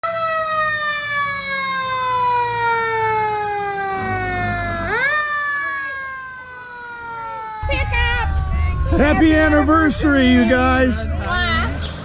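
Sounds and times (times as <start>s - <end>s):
vehicle siren wailing: 0.0s - 10.9s
low engine rumble: 2.6s - 12.0s.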